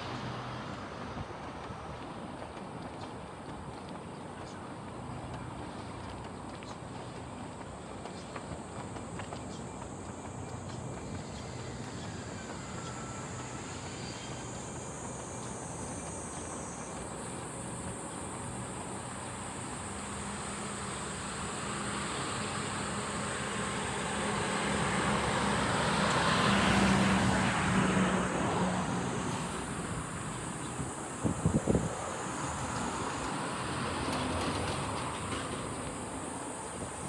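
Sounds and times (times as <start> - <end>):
high insect drone: 9.0 - 37.0
vehicle passing with low hum: 17.5 - 36.6.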